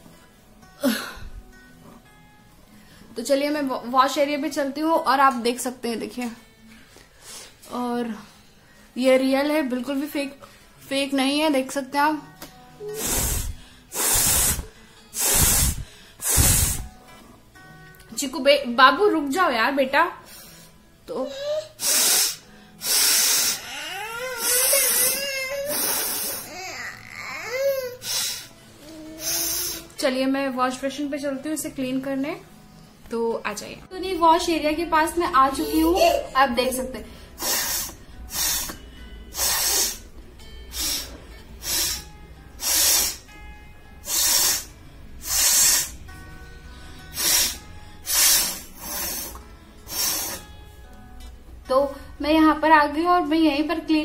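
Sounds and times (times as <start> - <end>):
forceful breaths through nose: 12.8 - 17.0, 21.8 - 23.7, 37.1 - 40.1, 40.7 - 43.3, 44.0 - 46.0, 46.8 - 50.6.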